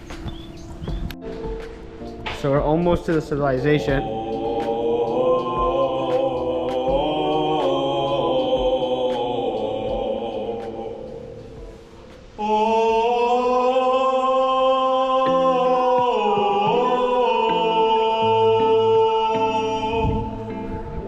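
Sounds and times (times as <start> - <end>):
bass line: 0.0 - 11.8.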